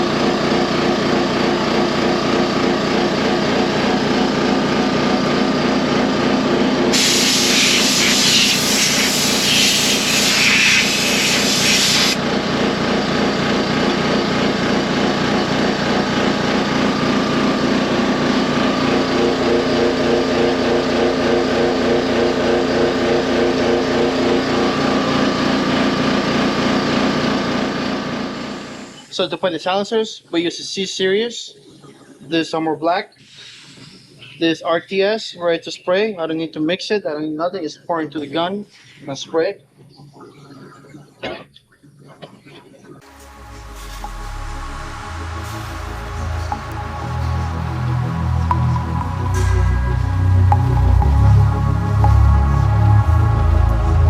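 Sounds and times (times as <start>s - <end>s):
air compressor motor running: 0.0s - 29.1s
compressed air hissing from blow gun: 6.9s - 12.2s.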